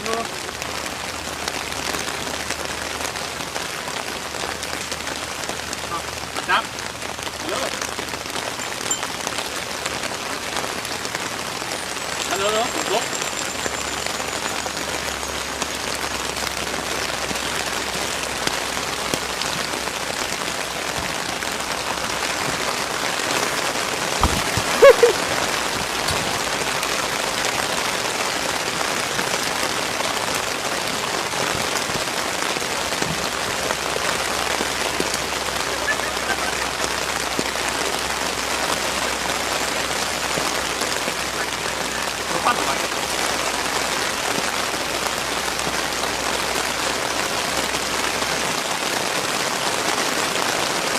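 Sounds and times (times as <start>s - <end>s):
steady rain: 0.0s - 50.9s
low thump: 24.2s - 24.8s.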